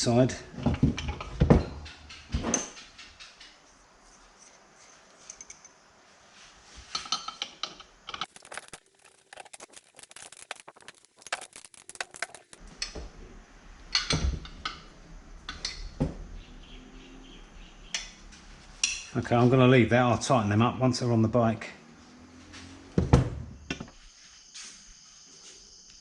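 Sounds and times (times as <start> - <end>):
metal parts and tools clinking: 4.1 - 5.8, 6.9 - 13.0.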